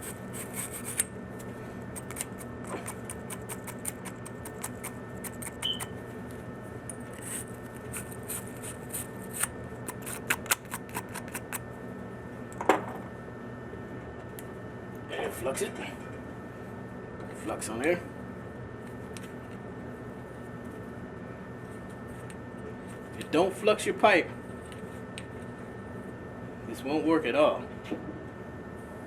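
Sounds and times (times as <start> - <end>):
scratchy rubbing on pipe: 0.0 - 1.0, 7.1 - 11.6.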